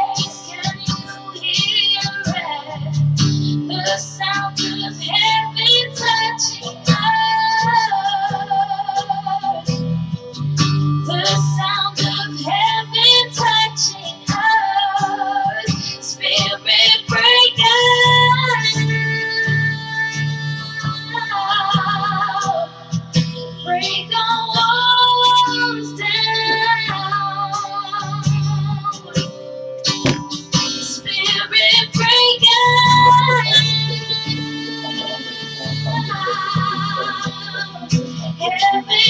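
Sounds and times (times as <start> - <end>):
woman singing: 0.0 - 9.6, 11.1 - 22.9, 23.6 - 29.4, 30.8 - 39.0
guitar: 0.0 - 39.0
bass line: 32.0 - 38.4.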